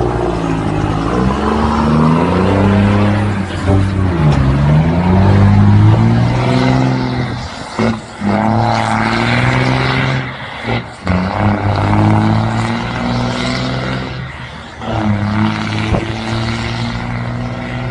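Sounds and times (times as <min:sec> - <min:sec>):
truck engine revving: 0:00.0 - 0:17.9.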